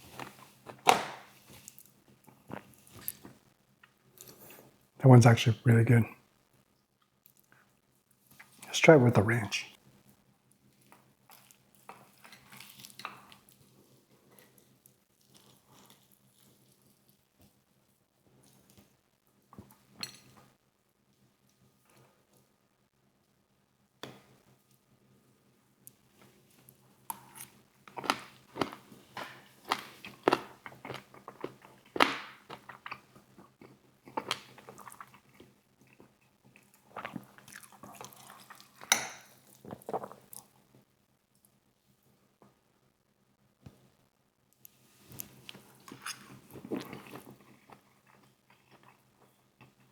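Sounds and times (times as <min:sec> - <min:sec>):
chicken wing being chewed: 0:26.2 - 0:40.6, 0:45.1 - 0:49.9
soft wet crunching: 0:26.2 - 0:40.6, 0:44.7 - 0:49.9.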